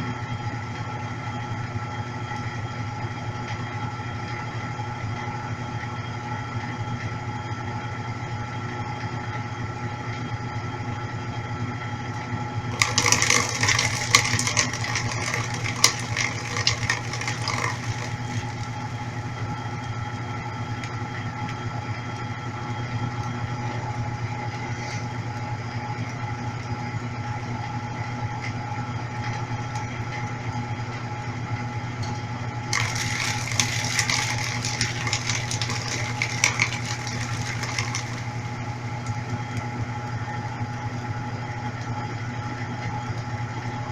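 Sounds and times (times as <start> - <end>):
washing machine spinning: 12.4 - 20.4, 32.3 - 41.5.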